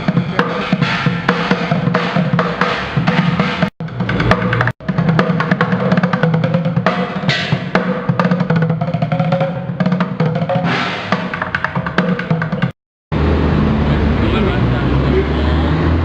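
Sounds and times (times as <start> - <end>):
fast drum pattern: 0.0 - 12.8.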